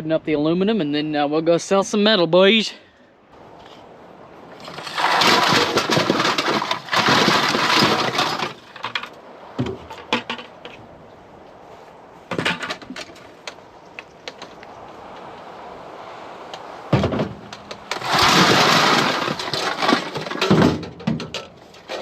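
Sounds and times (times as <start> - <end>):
aluminum cans clattering: 4.6 - 10.6, 17.0 - 22.0.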